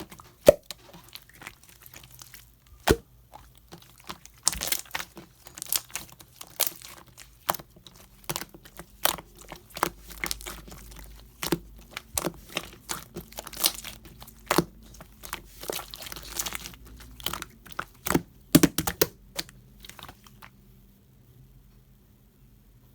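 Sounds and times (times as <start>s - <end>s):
slime squeezed sticky pops: 0.4s - 0.7s, 2.8s - 3.4s.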